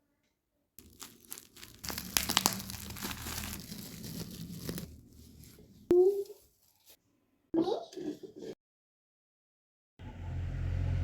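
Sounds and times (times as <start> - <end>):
packaging tearing: 0.8 - 5.0
packaging crinkling and rustling: 0.8 - 5.6.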